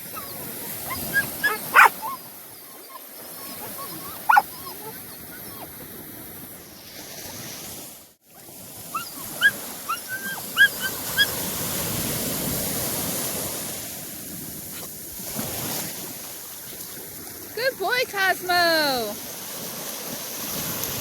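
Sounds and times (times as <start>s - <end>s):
ocean surf: 0.0s - 2.4s, 5.9s - 21.0s
dog whimpering: 0.0s - 5.9s, 8.9s - 11.4s
wind: 0.0s - 21.0s.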